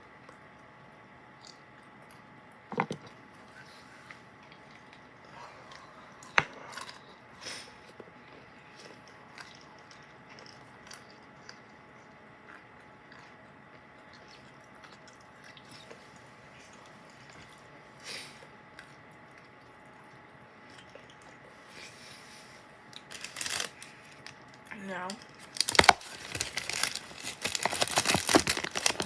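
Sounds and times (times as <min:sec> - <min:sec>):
nuts being chewed: 0:01.4 - 0:03.2, 0:07.8 - 0:17.7, 0:22.9 - 0:29.0.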